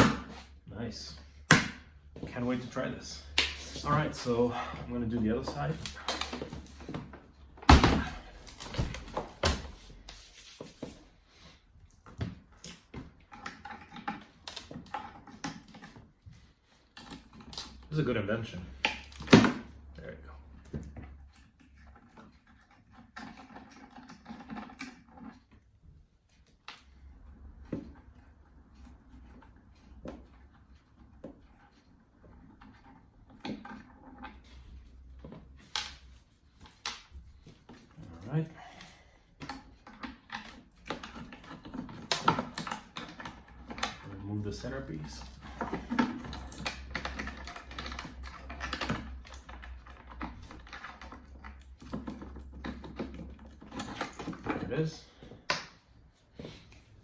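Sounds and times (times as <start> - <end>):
hand tools clicking and knocking: 1.4 - 9.7, 35.5 - 55.8.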